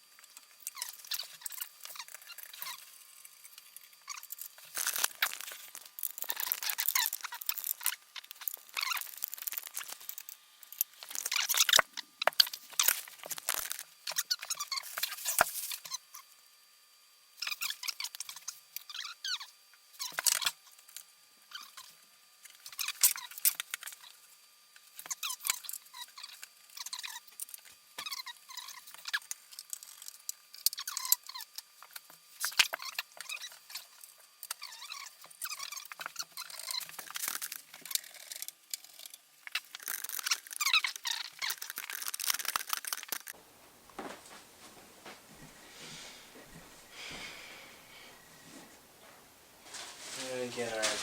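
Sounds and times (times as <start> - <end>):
packaging rustling and crinkling: 4.6 - 10.1, 49.6 - 51.0.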